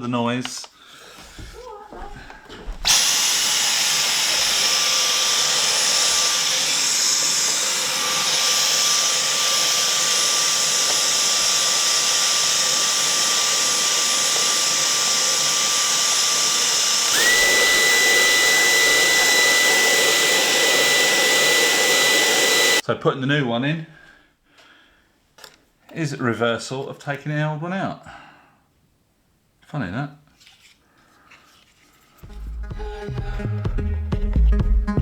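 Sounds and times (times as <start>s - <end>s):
electric motor blowing air: 2.8s - 22.8s.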